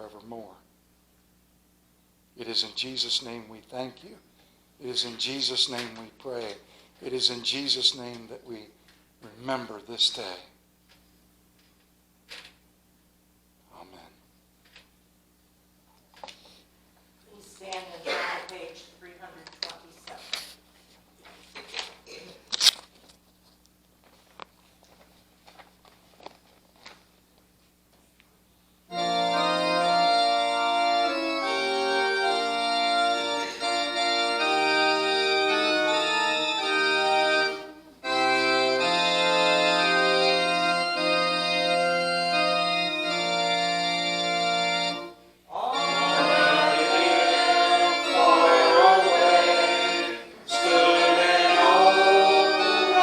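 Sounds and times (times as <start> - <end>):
organ playing hymn chords: 2.4 - 4.0, 4.8 - 6.1, 6.7 - 8.4, 28.9 - 53.0.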